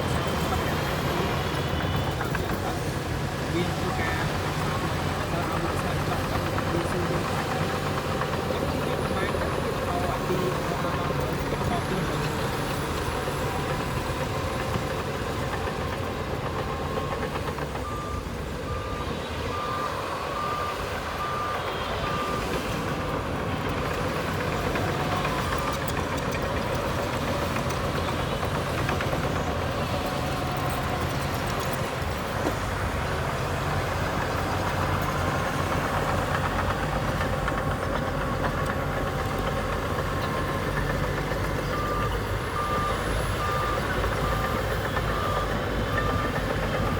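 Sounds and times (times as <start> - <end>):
diesel engine running: 0.0 - 46.9
reversing alarm beeping: 3.6 - 32.2, 34.1 - 46.9.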